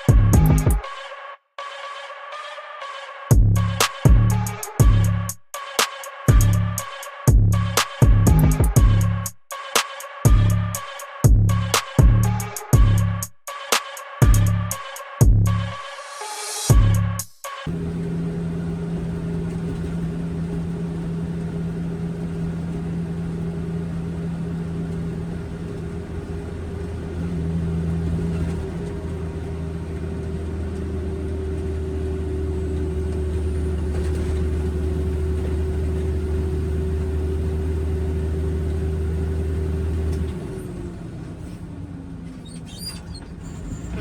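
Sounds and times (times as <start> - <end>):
truck diesel engine drone: 0.0 - 0.9, 3.3 - 5.4, 6.3 - 9.3, 10.2 - 13.3, 14.2 - 14.8, 16.7 - 44.0
road noise: 3.3 - 5.3, 16.8 - 44.0.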